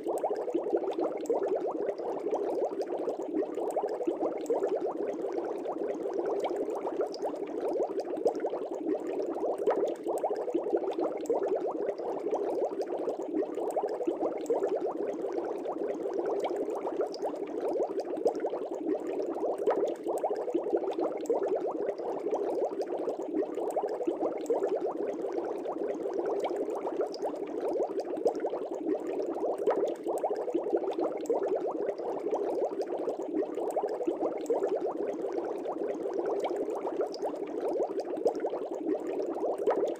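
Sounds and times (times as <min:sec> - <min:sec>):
aquarium air bubbling: 0:00.0 - 0:39.9.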